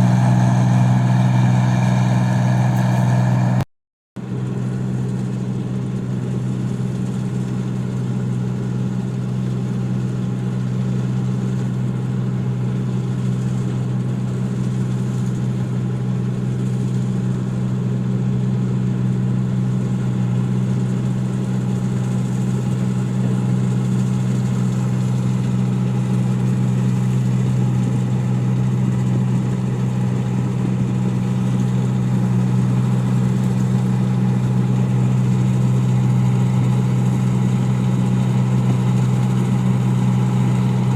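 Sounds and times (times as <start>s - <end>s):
machine engine droning: 0.0s - 3.7s, 21.5s - 40.9s.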